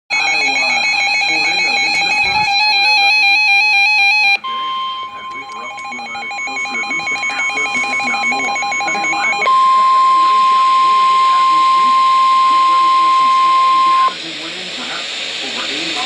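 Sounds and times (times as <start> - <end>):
warbling electronic alert tone: 0.1 - 14.2
steady single-pitch alarm tone: 0.1 - 16.0.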